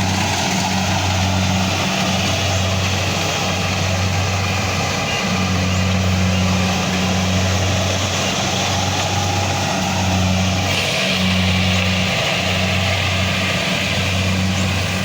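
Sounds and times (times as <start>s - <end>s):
engine running steadily: 0.0s - 15.0s.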